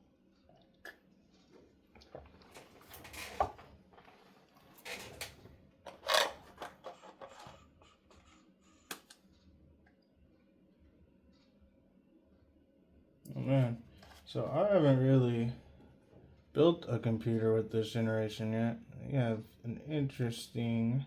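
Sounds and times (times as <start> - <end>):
packaging rustling and scraping: 2.2 - 8.2.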